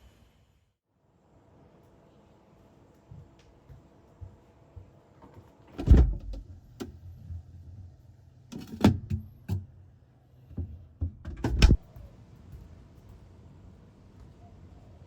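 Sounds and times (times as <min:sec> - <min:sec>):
knocks and thumps: 0:10.5 - 0:12.0.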